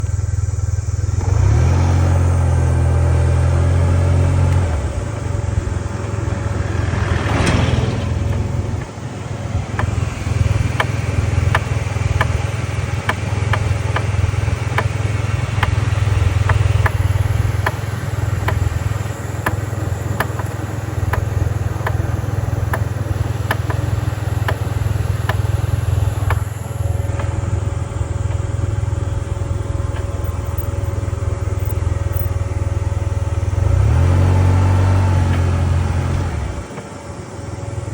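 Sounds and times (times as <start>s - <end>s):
scooter engine running: 0.0s - 37.9s
sharp regular ticking: 8.2s - 33.3s.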